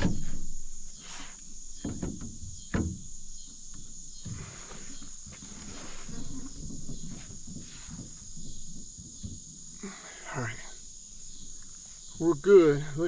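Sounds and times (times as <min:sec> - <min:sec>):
insects chirring: 0:00.0 - 0:13.0.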